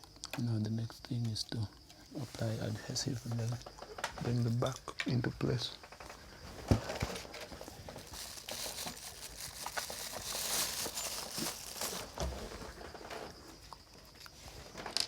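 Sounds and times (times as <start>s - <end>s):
crinkling rustle: 5.9s - 13.5s.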